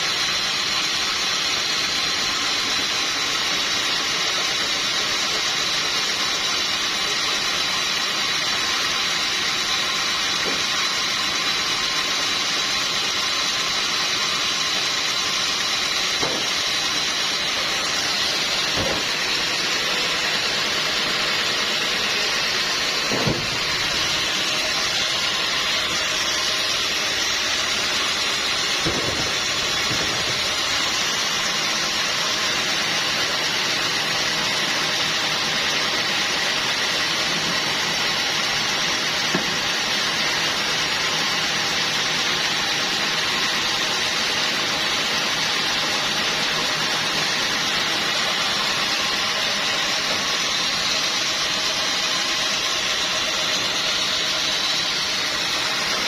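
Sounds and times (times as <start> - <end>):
sawmill machinery whine and hiss: 0.0 - 56.0
knocks: 16.2 - 16.5, 23.1 - 23.6.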